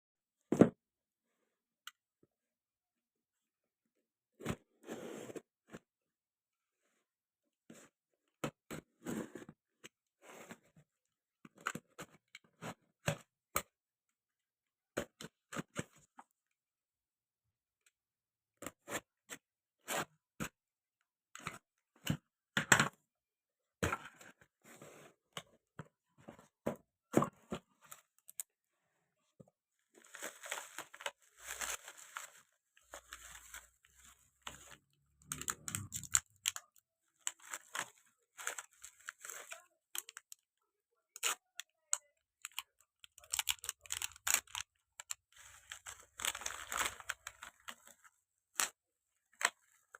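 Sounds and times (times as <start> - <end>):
packaging rustling and tearing: 30.0 - 40.3, 42.4 - 48.7
packaging clicks and taps: 34.5 - 40.4, 41.1 - 47.9.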